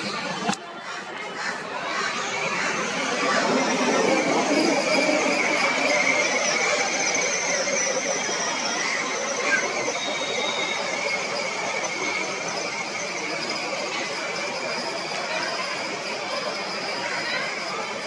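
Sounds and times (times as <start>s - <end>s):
crowd of children: 0.0s - 18.0s.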